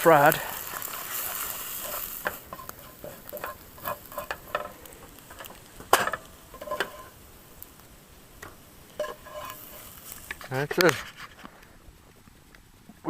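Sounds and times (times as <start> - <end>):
eggs sizzling in pan: 0.0 - 13.0
utensil scraping and tapping pan: 0.6 - 7.2, 8.4 - 11.5
utensil knocking pan: 1.8 - 7.1, 8.4 - 9.7.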